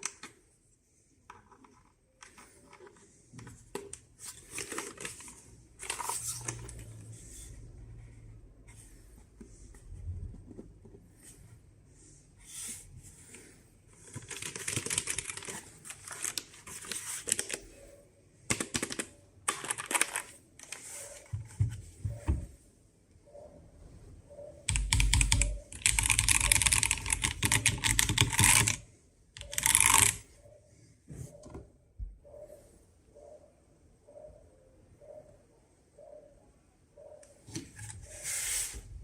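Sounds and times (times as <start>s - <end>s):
mechanical keyboard typing: 14.0s - 16.4s, 18.5s - 20.8s, 24.7s - 28.8s, 29.4s - 30.2s.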